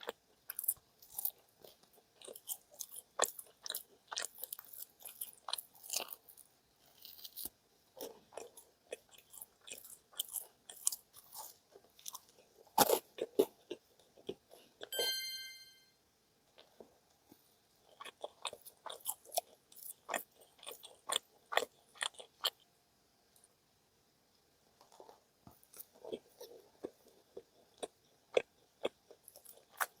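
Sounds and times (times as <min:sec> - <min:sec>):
crunchy bites and chewing: 0:00.0 - 0:14.9, 0:17.8 - 0:22.7, 0:24.8 - 0:30.0
bright ringing tone: 0:14.9 - 0:16.0.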